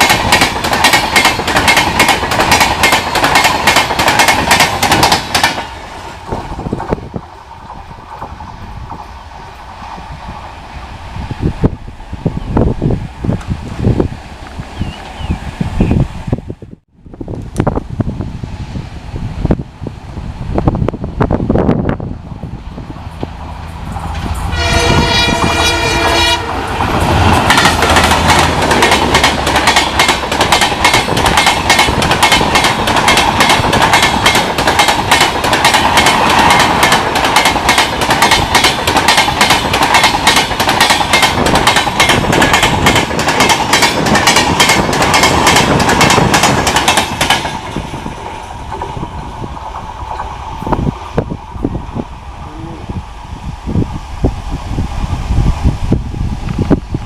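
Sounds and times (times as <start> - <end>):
train wheels clattering over rail joints: 0.0 - 9.1, 26.0 - 51.2
locomotive horn: 24.5 - 27.9.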